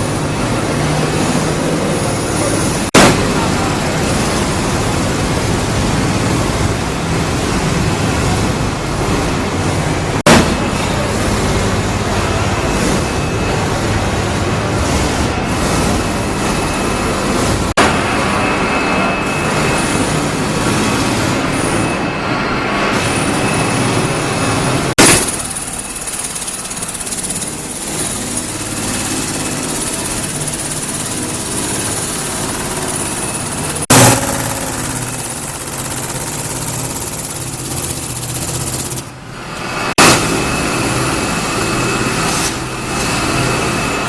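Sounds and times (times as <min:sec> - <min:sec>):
mechanical running noise: 0:22.9 - 0:44.0.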